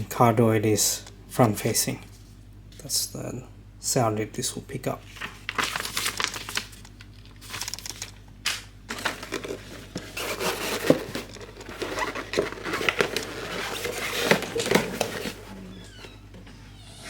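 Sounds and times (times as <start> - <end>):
packaging crinkling and rustling: 5.0 - 16.2.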